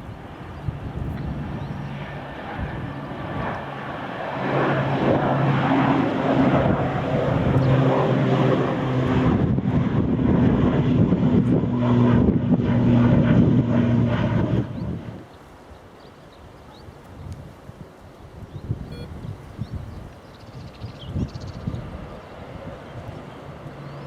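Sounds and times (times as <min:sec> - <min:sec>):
airliner engines droning: 0:00.0 - 0:15.3, 0:20.2 - 0:24.0.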